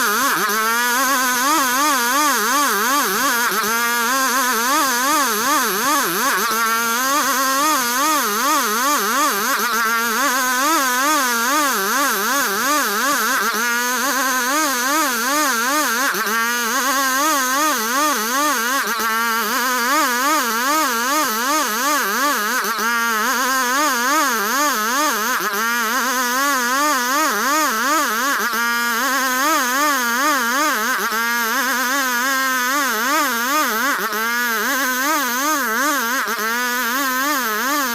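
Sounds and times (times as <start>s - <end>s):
sawmill engine sawing wood: 0.0s - 37.9s.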